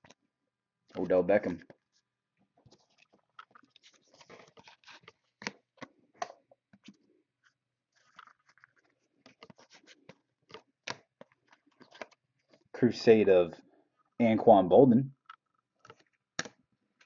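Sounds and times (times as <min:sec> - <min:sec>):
cards rustling and clicking: 0:02.6 - 0:12.7, 0:15.2 - 0:17.0.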